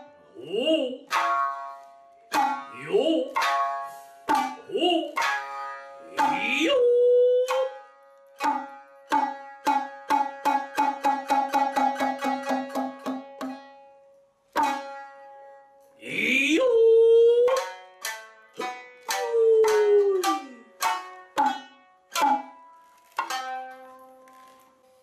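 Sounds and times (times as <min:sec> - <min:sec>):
person singing: 0:00.0 - 0:01.3, 0:02.4 - 0:03.7, 0:04.3 - 0:05.4, 0:06.0 - 0:12.7, 0:16.0 - 0:17.9, 0:18.6 - 0:21.1
shamisen plucking: 0:00.0 - 0:25.0.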